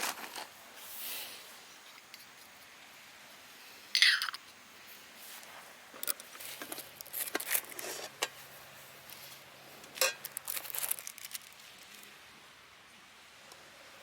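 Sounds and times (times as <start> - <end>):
objects clicking and rustling: 6.0 - 8.4, 9.8 - 12.1.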